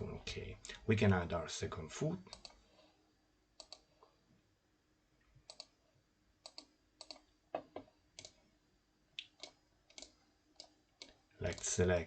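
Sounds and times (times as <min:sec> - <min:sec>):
faint computer mouse clicks: 0:03.6 - 0:03.9, 0:05.5 - 0:05.7, 0:06.4 - 0:07.2.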